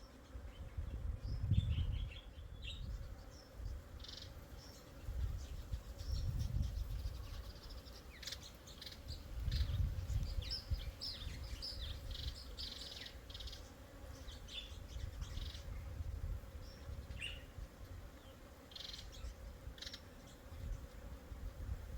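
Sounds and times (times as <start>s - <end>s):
birds chirping: 0.0s - 16.0s.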